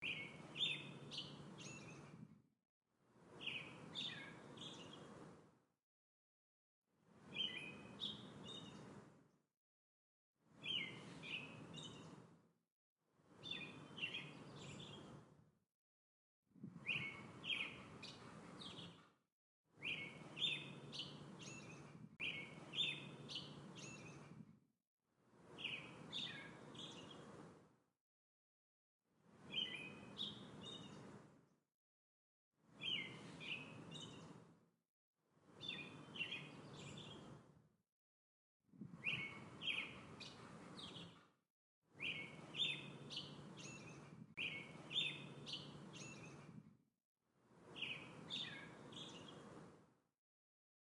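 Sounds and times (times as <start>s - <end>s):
songbirds chirping: 0.0s - 2.2s, 3.2s - 5.4s, 7.2s - 9.2s, 10.6s - 12.3s, 13.3s - 15.3s, 16.8s - 19.0s, 19.8s - 24.4s, 25.4s - 27.5s, 29.4s - 31.2s, 32.8s - 34.4s, 35.5s - 37.5s, 39.0s - 41.2s, 42.0s - 46.6s, 47.6s - 49.7s.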